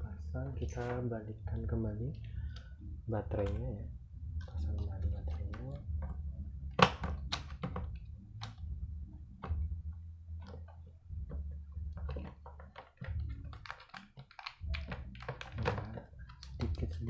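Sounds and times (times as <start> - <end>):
low hum: 0.0 - 12.5
plastic clicks and taps: 6.8 - 8.6, 12.0 - 17.0.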